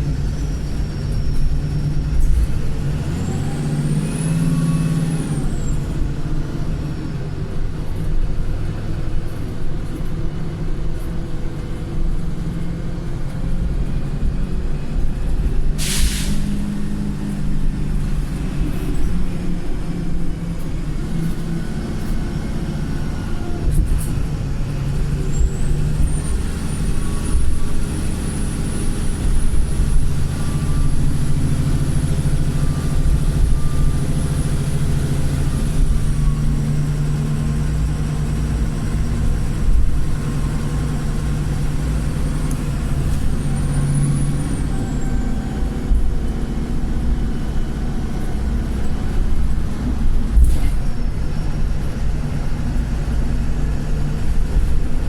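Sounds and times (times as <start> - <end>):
bus diesel engine under load: 0.0 - 55.0.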